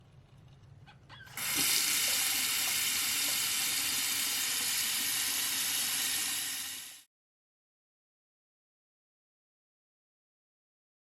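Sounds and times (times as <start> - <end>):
water running from tap: 1.3 - 7.1.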